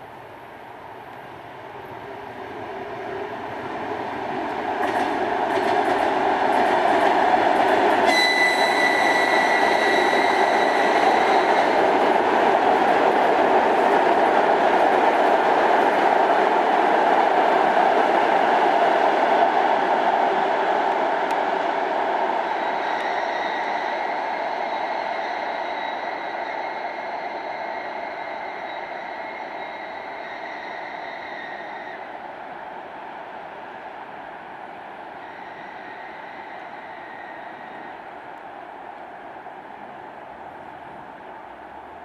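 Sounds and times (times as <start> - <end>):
train passing: 0.0 - 42.0.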